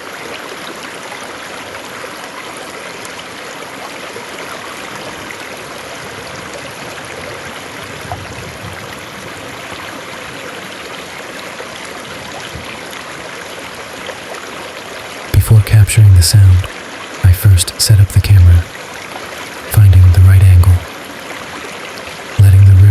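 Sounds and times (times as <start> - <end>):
river water flowing: 0.0 - 8.0, 8.8 - 15.3, 20.8 - 22.4.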